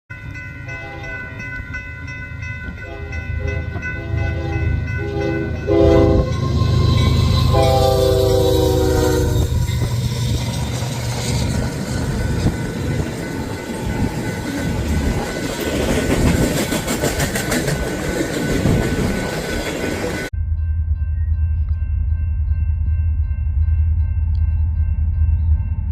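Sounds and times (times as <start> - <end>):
locomotive horn blasts: 0.7 - 1.4, 2.8 - 10.0
train wheels clacking on rails: 4.9 - 20.3.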